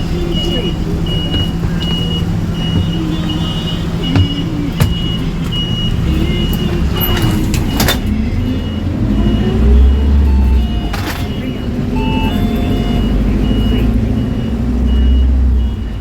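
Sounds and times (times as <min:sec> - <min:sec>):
bus engine humming: 0:00.0 - 0:16.0
sharp knocks: 0:01.3 - 0:02.1, 0:04.1 - 0:05.2.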